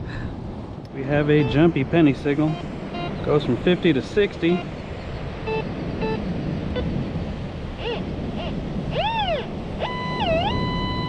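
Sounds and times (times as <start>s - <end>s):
wind: 0.0s - 11.0s
metal detector tones: 2.5s - 3.4s, 5.4s - 6.2s, 8.9s - 11.0s.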